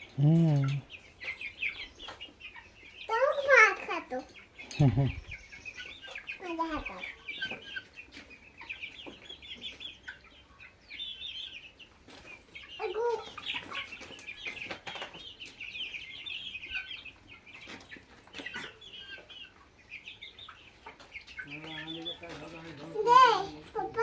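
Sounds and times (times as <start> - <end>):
chickens clucking and peeping: 0.0 - 24.0.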